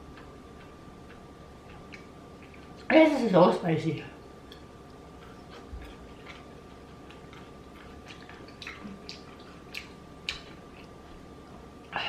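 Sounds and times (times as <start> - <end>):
faint steady hum: 0.0 - 12.0
wet mouth chewing clicks: 5.2 - 11.0.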